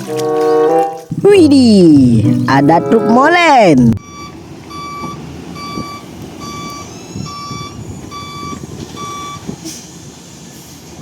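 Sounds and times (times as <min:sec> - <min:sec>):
steady low noise: 0:01.1 - 0:04.0
reversing alarm beeps: 0:04.0 - 0:09.5.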